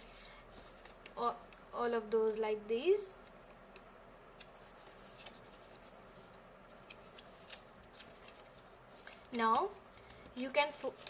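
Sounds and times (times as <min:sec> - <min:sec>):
quiet hiss: 0:00.0 - 0:11.0
paper crinkling: 0:04.4 - 0:11.0.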